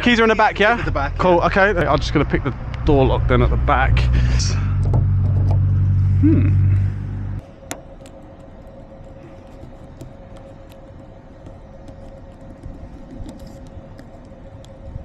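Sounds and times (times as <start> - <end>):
engine ticking: 0.0 - 7.4
vehicle engine idling: 0.0 - 7.8.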